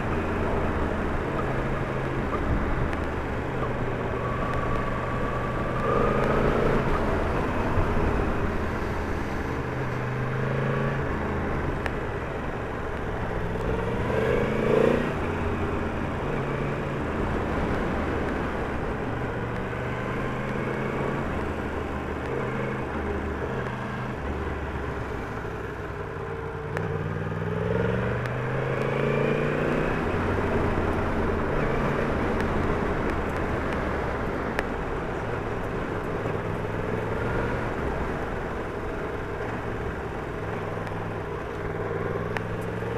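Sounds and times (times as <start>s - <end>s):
wind and road noise: 0.0s - 42.9s
motorcycle engine revving: 13.3s - 18.0s.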